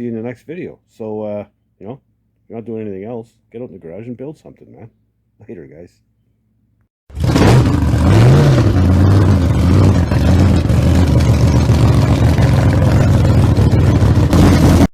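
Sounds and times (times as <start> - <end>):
loud engine revving and idling: 7.1 - 14.9.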